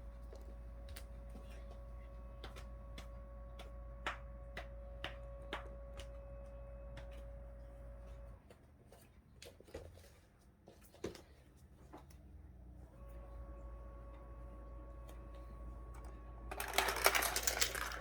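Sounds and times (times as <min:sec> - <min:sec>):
electrical hum: 0:00.0 - 0:08.6, 0:12.4 - 0:18.0
marbles clicking on plastic track: 0:16.5 - 0:18.0.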